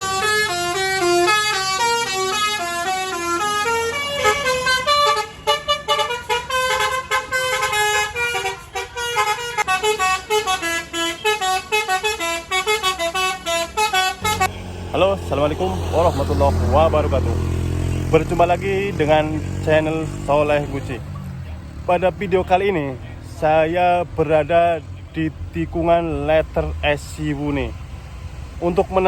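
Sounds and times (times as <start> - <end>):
musical bus horn melody: 0.0 - 20.4
low engine hum: 14.2 - 29.0.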